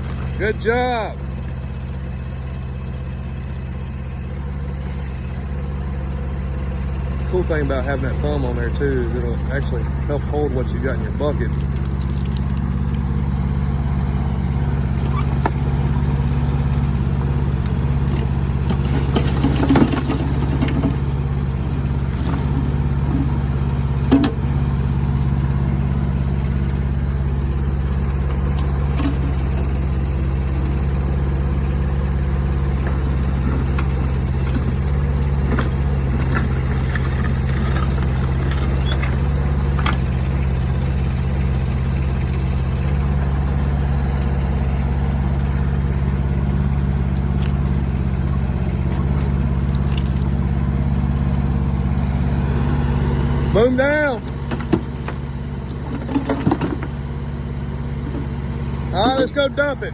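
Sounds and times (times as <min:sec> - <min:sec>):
diesel excavator engine running: 0:00.0 - 0:59.9
digging knocks: 0:14.8 - 0:24.6, 0:52.0 - 0:57.2.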